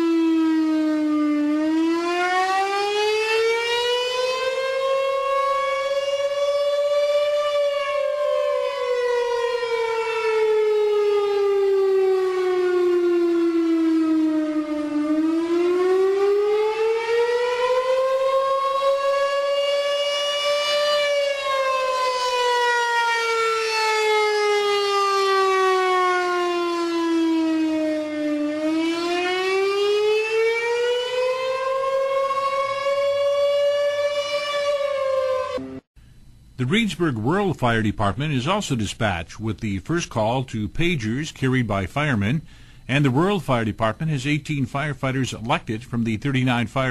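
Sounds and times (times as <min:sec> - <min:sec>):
fire siren rising and falling: 0:00.0 - 0:46.9.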